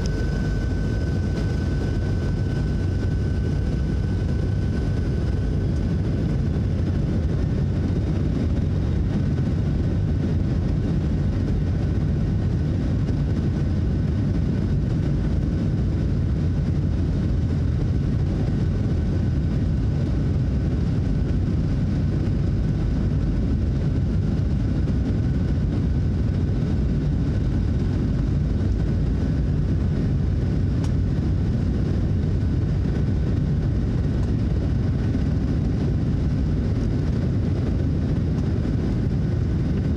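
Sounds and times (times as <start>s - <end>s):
faint steady engine whine: 0.0s - 39.9s
jet engine cabin rumble: 0.0s - 39.9s.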